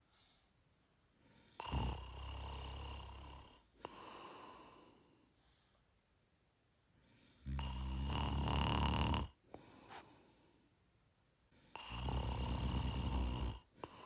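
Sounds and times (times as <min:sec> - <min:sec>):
soft breath: 0:00.0 - 0:01.6, 0:03.5 - 0:06.0, 0:09.5 - 0:10.8
person snoring: 0:01.4 - 0:05.1, 0:07.3 - 0:09.4, 0:11.7 - 0:14.0.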